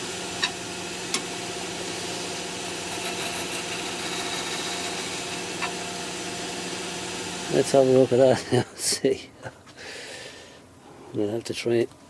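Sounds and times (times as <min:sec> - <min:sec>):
lathe motor humming: 0:00.0 - 0:08.3.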